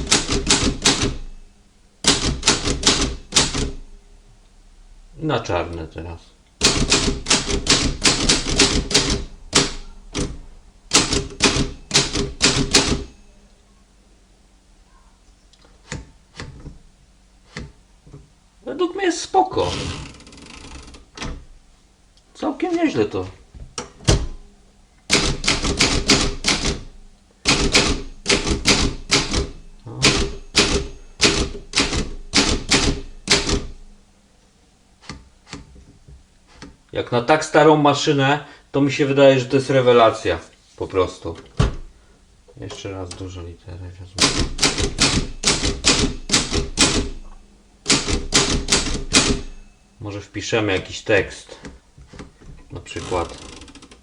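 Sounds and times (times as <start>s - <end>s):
typewriter typebar strikes: 0.0s - 1.4s, 2.0s - 3.9s, 6.6s - 13.3s, 25.1s - 33.9s, 44.2s - 49.8s.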